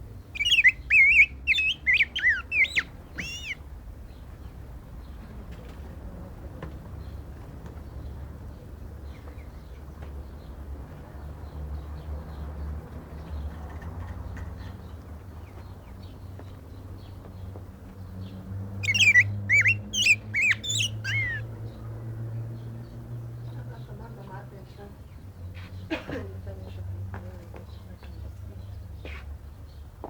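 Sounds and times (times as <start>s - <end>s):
bird singing whistled notes: 0.4s - 3.6s, 18.8s - 21.4s
faint high chirps: 0.4s - 3.6s, 18.8s - 21.4s.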